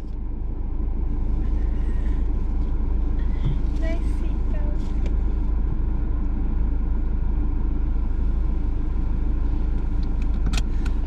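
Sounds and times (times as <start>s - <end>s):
vehicle engine and road noise: 0.0s - 11.0s.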